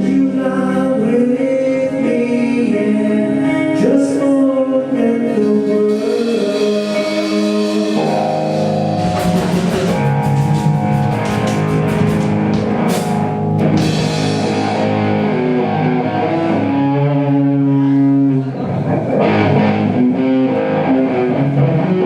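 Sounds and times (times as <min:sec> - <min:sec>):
electric guitar chords: 0:00.0 - 0:22.0
drum kit cymbals and drums: 0:05.9 - 0:15.3.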